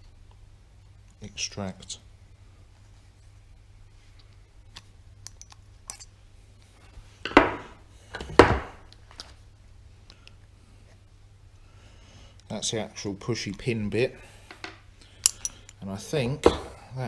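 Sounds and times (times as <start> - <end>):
metal tool clicks and scrapes: 5.2 - 6.1
loud sharp knocks: 8.4 - 8.8.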